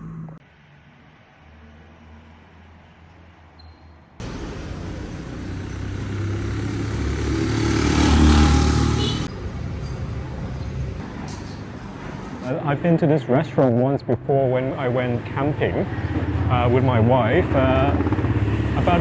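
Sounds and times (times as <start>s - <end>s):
quiet road noise: 0.0s - 19.0s
vehicle passing close by: 4.2s - 13.0s, 14.7s - 19.0s.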